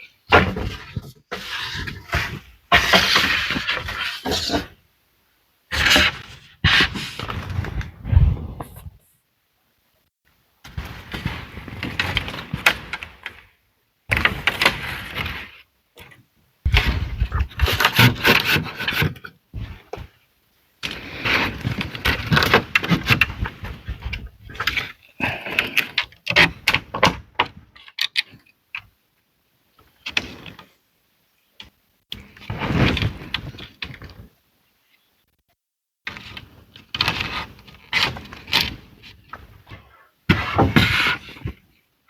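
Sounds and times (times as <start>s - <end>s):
wood scraping and rubbing: 0.3s - 4.7s, 5.7s - 9.0s, 16.7s - 20.0s, 36.1s - 41.6s.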